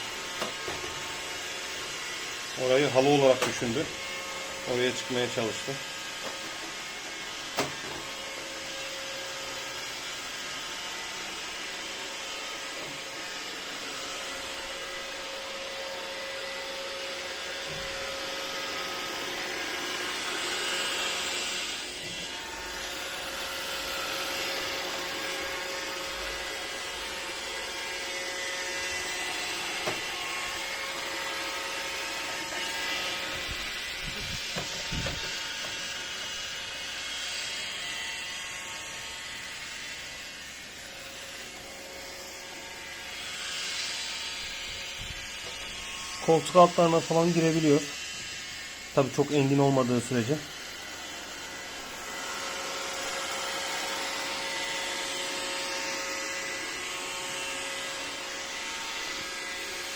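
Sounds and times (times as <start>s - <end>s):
robot vacuum whirring: 0.0s - 59.9s.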